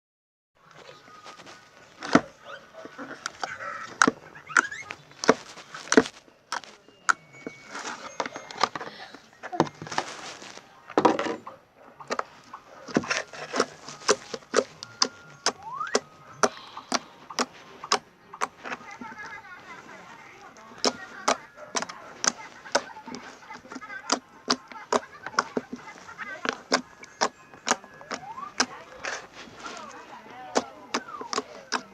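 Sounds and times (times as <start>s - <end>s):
slime clicking and popping: 26.5s - 29.2s.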